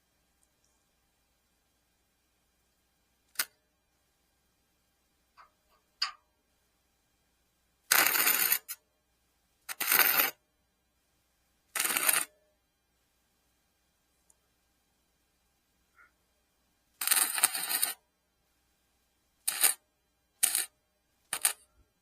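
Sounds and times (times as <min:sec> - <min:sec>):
arc welding crackling: 0:07.9 - 0:08.8, 0:09.7 - 0:10.4, 0:11.8 - 0:12.3, 0:17.0 - 0:18.0, 0:19.5 - 0:19.8, 0:20.4 - 0:20.7, 0:21.3 - 0:21.6.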